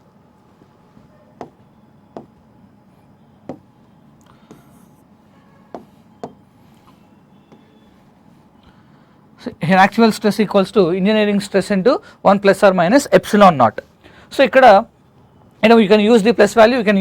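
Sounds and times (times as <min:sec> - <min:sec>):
pen tapping on hard surface: 0:05.7 - 0:06.4.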